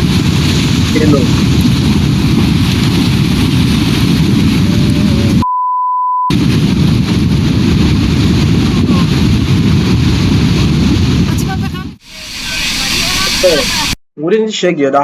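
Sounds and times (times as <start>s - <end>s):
avalanche rumbling roar: 0.0s - 5.4s, 6.3s - 14.0s
censor bleep: 5.4s - 6.3s.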